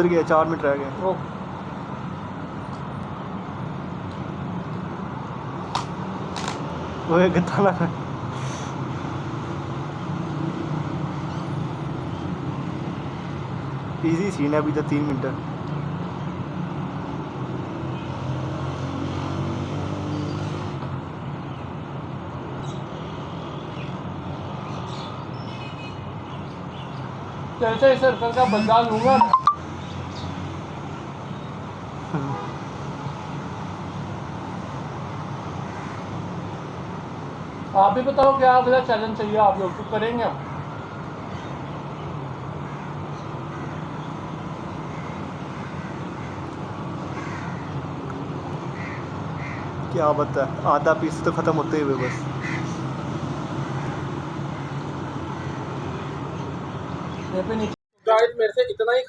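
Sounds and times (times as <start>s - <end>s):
road traffic noise: 0.0s - 58.3s
short falling-pitch sound: 28.4s - 29.6s.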